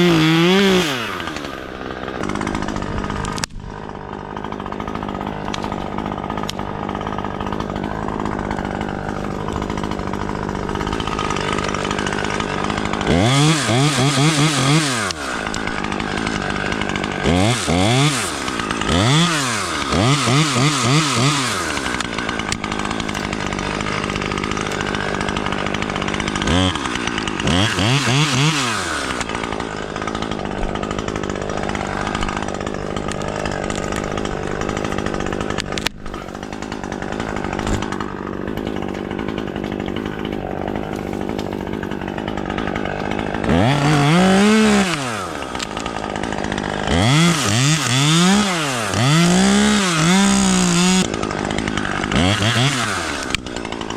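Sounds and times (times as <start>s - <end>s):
chainsaw revving: 0.0s - 53.9s.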